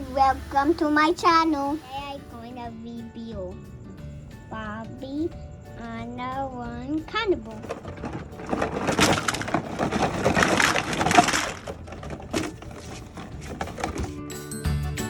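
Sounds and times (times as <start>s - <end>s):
music: 0.0s - 15.0s
packaging tearing and crumpling: 7.7s - 14.0s.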